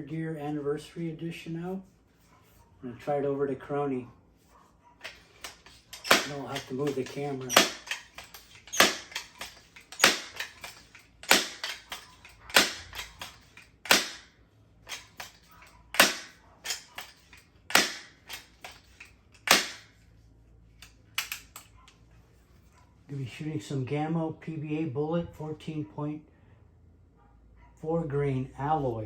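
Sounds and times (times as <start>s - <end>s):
gear handling clacks: 5.0s - 20.0s, 20.8s - 22.0s.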